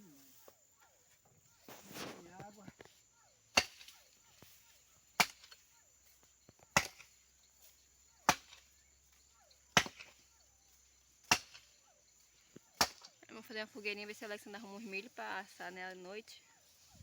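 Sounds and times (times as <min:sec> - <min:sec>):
axe chopping firewood: 0:03.5 - 0:10.3, 0:11.1 - 0:11.8, 0:12.4 - 0:13.2.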